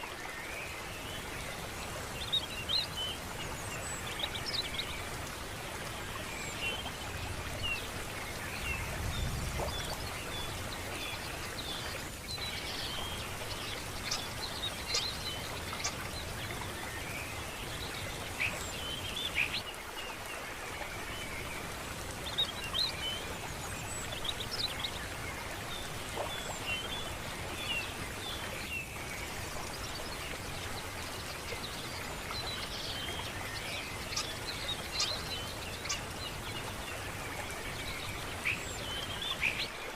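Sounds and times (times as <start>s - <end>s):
running water: 0.0s - 39.9s
small birds chirping: 31.6s - 39.8s.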